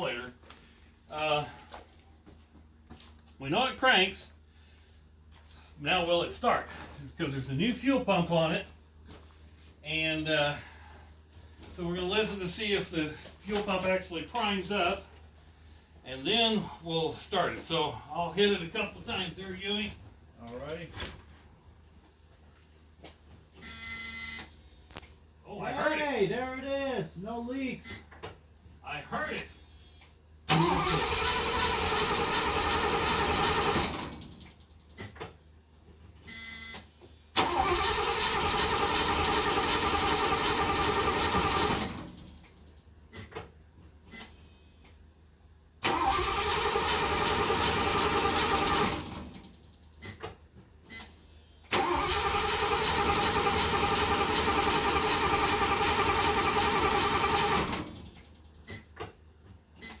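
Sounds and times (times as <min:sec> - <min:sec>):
car engine cranking: 0:30.5 - 0:34.7, 0:37.4 - 0:42.5, 0:45.8 - 0:49.6, 0:51.7 - 0:58.6.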